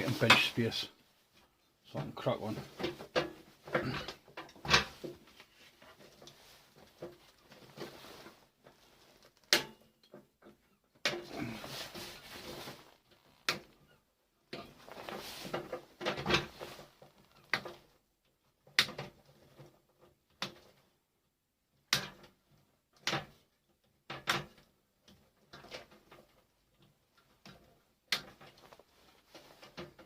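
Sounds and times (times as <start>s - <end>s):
rustling and scraping: 0.0s - 17.9s, 25.4s - 30.0s
objects knocking and clattering: 1.4s - 13.8s, 14.5s - 17.9s.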